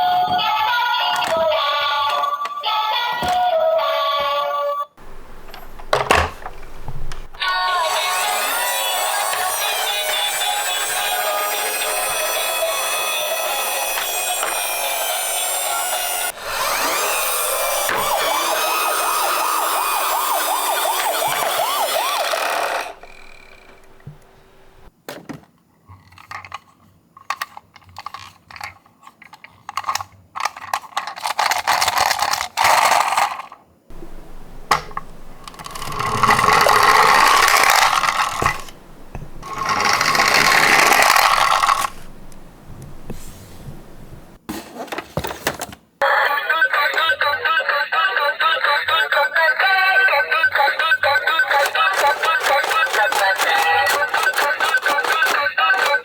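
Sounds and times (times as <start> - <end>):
toy cars rolling clicks: 7.4 - 24.0, 26.0 - 33.7, 34.7 - 38.8, 39.4 - 42.4, 50.6 - 56.0
ambulance siren wailing: 16.6 - 23.3.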